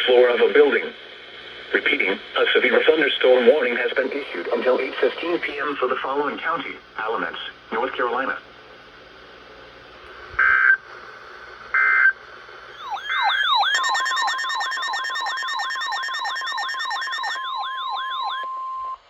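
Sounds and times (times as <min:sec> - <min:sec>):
steady single-pitch alarm tone: 0:12.7 - 0:19.0
yelping siren tone: 0:12.7 - 0:19.0.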